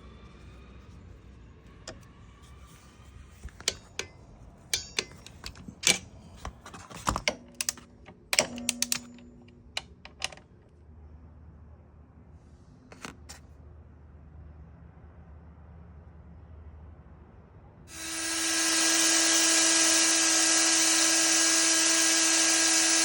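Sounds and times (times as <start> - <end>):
metal tools clicking and clinking: 3.5 - 6.2, 7.0 - 10.4
metal piece ringing: 3.6 - 6.2, 7.3 - 10.1.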